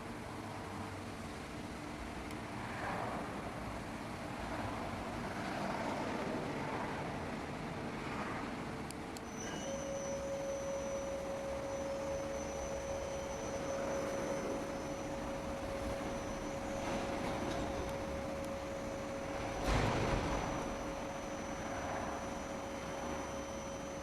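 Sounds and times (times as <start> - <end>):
lathe motor whine: 9.2 - 24.0
thin high tone: 9.2 - 24.0.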